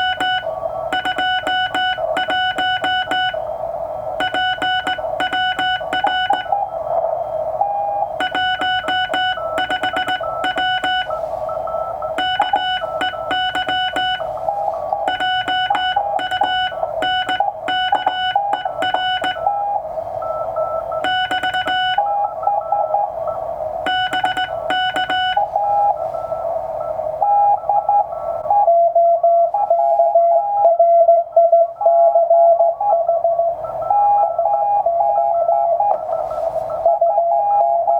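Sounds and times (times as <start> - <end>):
clicky keying bursts: 0.0 - 3.4, 4.2 - 6.6, 8.2 - 11.2, 12.2 - 14.4, 15.1 - 19.5, 21.0 - 22.0, 23.9 - 25.4
morse code tones: 0.0 - 7.0, 8.0 - 23.2, 23.8 - 26.4.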